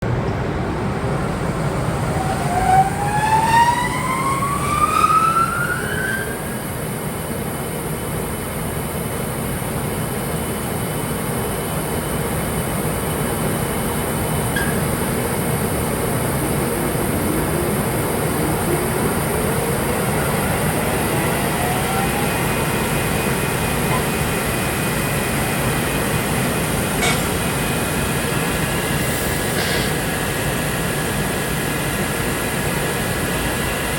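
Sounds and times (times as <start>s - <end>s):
faint rising whine: 14.6s - 23.5s.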